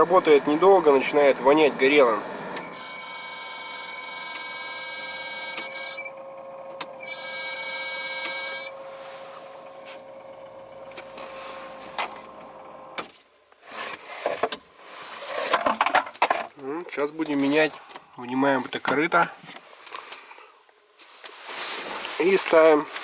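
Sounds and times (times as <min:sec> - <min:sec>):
heater blower fan whistling whine: 0:05.2 - 0:13.0
clattering handling noises: 0:09.2 - 0:23.0.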